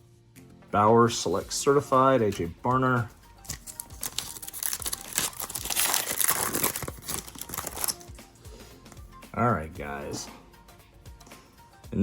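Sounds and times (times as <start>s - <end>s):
plastic wrapper crinkling and tearing: 3.4s - 8.1s.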